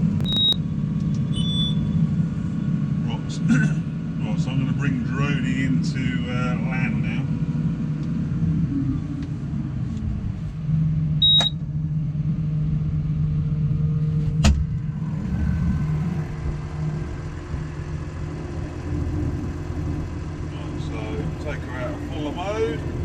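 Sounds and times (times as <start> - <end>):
tractor engine running: 0.0 - 23.0
short high beep: 0.2 - 0.6, 1.3 - 2.0, 11.2 - 11.6.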